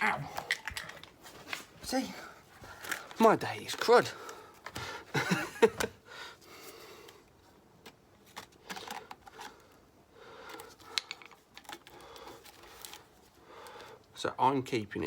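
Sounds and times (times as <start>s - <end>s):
rustling: 0.0s - 7.6s
light clicks and knocks of tools: 10.5s - 13.1s.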